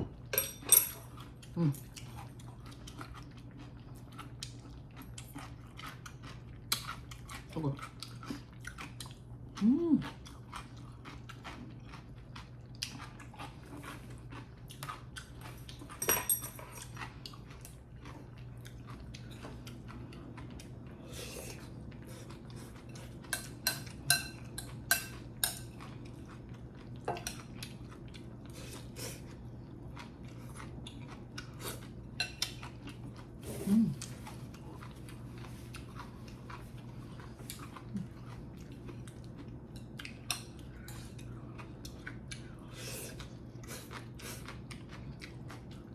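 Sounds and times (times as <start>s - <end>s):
chewing and mouth sounds: 1.0s - 16.0s, 16.6s - 45.9s
person humming: 9.6s - 10.0s, 33.5s - 34.1s.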